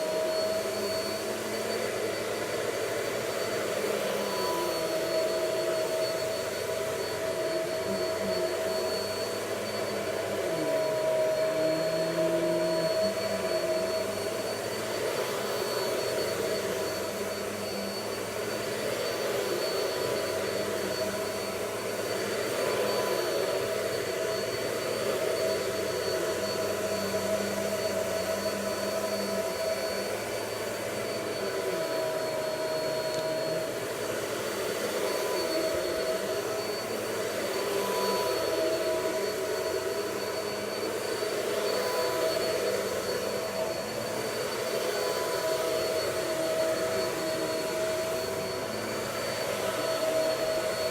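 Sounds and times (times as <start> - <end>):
vacuum cleaner running: 0.0 - 50.9.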